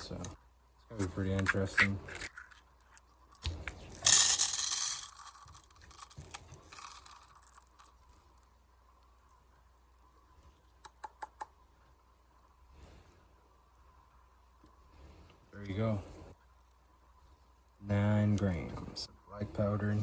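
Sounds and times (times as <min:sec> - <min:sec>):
powder grains pouring into cup: 0:04.0 - 0:08.4.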